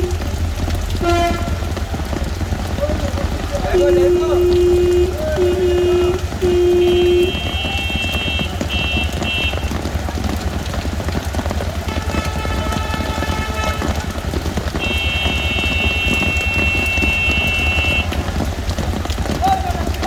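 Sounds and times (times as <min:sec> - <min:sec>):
deep rumble: 0:00.0 - 0:07.6
heavy rain on a street: 0:00.0 - 0:20.0.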